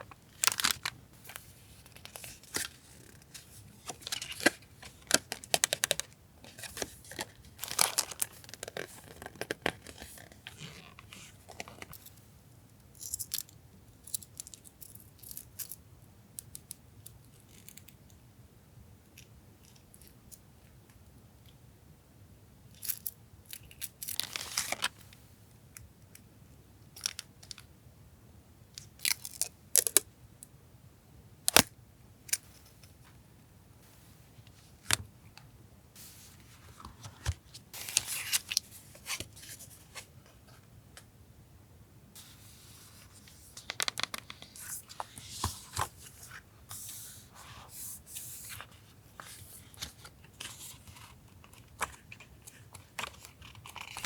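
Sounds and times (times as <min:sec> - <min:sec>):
paper rustling and crinkling: 0:00.0 - 0:11.9, 0:36.0 - 0:40.1.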